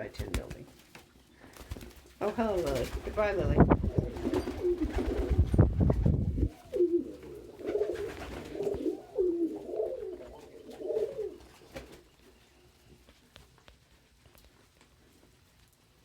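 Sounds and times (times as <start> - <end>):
pigeon cooing: 3.8 - 5.5, 6.2 - 12.3.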